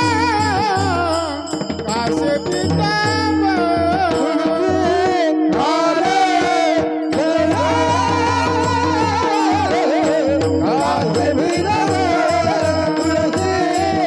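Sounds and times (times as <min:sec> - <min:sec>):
person singing devotional song: 0:00.0 - 0:14.0.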